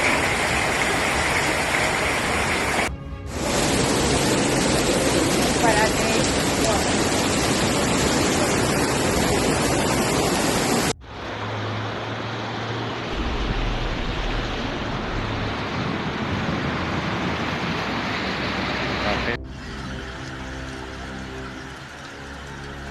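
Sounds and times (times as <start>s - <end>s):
floodwater rushing: 0.0s - 22.9s
low hum: 10.9s - 22.9s.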